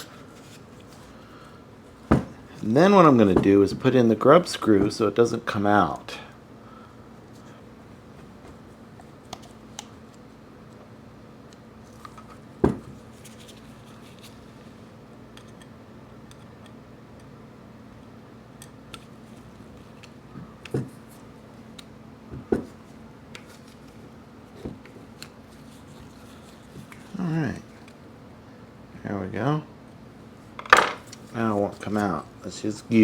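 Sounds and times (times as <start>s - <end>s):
metal parts knocking on bench: 30.6s - 31.0s.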